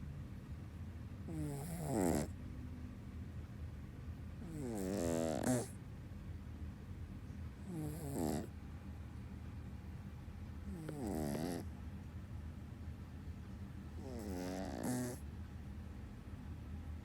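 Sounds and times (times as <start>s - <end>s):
dog snoring: 1.2s - 2.4s, 4.4s - 5.8s, 7.6s - 8.5s, 10.6s - 11.7s, 13.9s - 15.2s.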